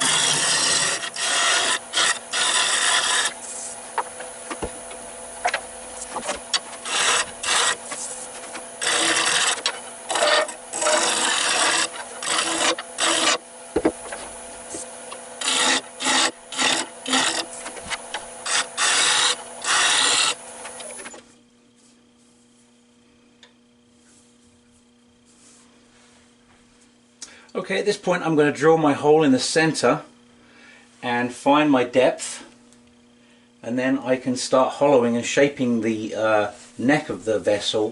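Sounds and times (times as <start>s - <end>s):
lathe tool scraping wood: 0.0s - 21.2s
lathe humming: 0.0s - 21.3s.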